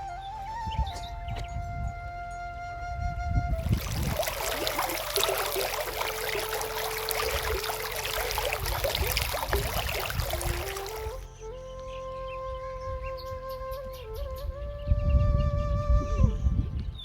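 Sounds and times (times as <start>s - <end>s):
flute music: 0.0s - 17.0s
water rushing and splashing: 3.5s - 11.3s.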